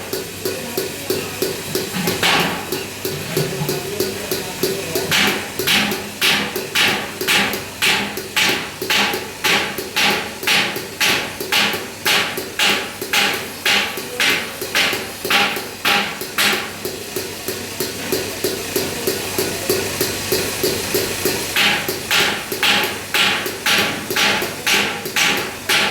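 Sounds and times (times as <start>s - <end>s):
hammer striking metal: 2.2s - 2.9s, 5.1s - 16.8s, 21.6s - 25.9s.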